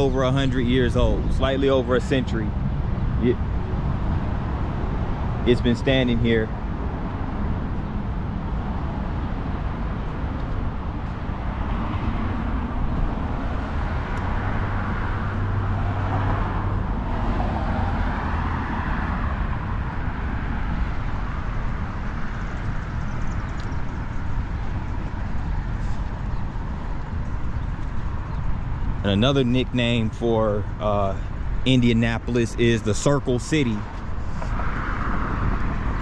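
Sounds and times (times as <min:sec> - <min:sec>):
street traffic: 0:00.0 - 0:36.0
vehicle passing: 0:00.0 - 0:36.0.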